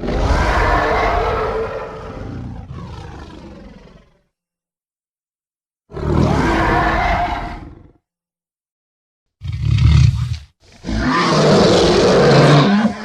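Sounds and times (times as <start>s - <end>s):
dinosaur roars: 0.0s - 4.3s, 5.9s - 8.0s, 9.4s - 13.0s.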